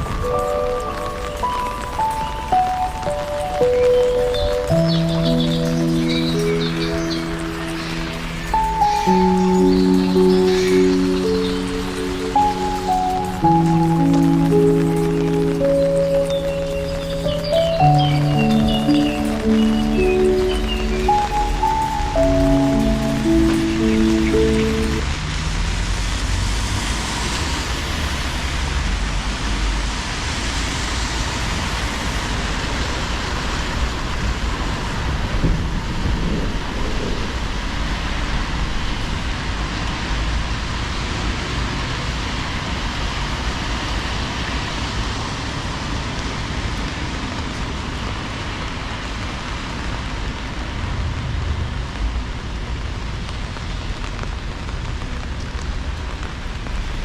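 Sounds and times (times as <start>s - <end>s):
heavy rain falling: 0.0s - 57.0s
low rumble: 22.3s - 34.2s.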